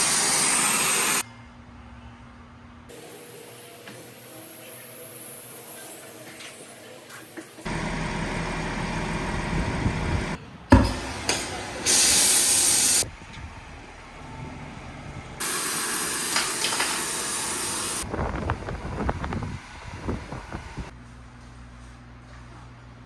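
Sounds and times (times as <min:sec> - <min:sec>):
loud hissing bursts: 0:00.0 - 0:01.2, 0:11.8 - 0:13.0, 0:15.4 - 0:18.0
rumbling work noise: 0:07.6 - 0:12.1, 0:13.0 - 0:15.6, 0:16.4 - 0:23.0.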